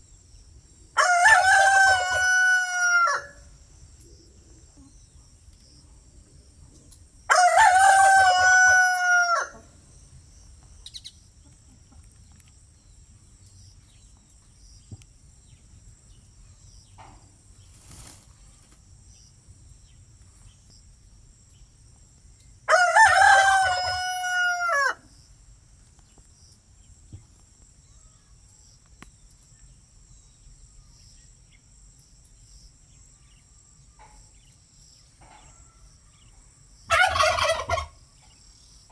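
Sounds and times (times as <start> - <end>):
faint high-pitched hum: 0.0 - 37.0
rooster crowing: 1.0 - 3.5, 7.3 - 9.7, 22.7 - 25.0, 36.9 - 37.9.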